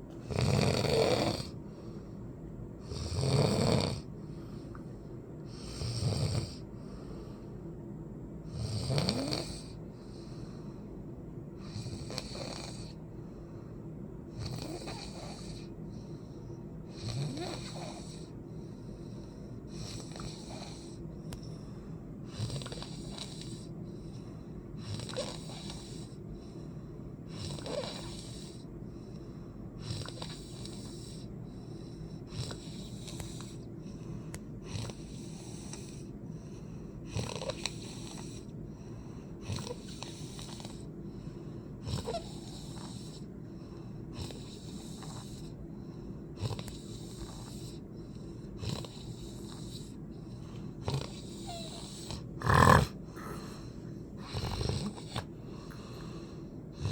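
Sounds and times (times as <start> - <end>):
steady low hum: 0.0 - 56.9
person snoring: 0.2 - 1.6, 2.8 - 4.1, 8.5 - 9.8, 16.9 - 18.3, 24.8 - 26.2, 27.3 - 28.6, 37.1 - 38.5, 39.4 - 40.9, 41.8 - 43.3, 46.4 - 56.9.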